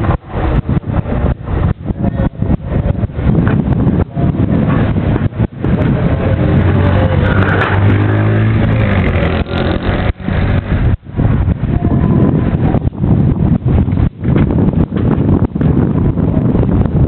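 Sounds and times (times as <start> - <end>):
wind buffeting microphone: 0.0 - 17.0
vehicle engine driving past: 6.0 - 11.0.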